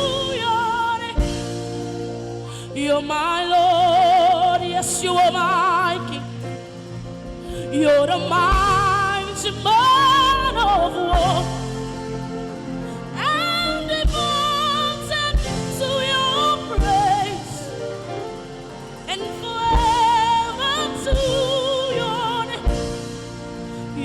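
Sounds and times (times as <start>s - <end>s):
held keyboard chords: 0.0s - 24.0s
solo voice singing with vibrato: 7.7s - 18.1s.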